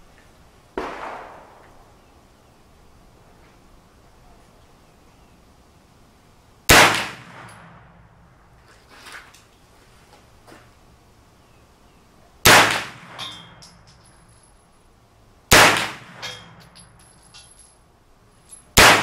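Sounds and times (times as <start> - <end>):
rifle shots: 0.8 - 1.6, 6.7 - 7.9, 12.4 - 13.6, 15.5 - 16.6, 18.8 - 19.0.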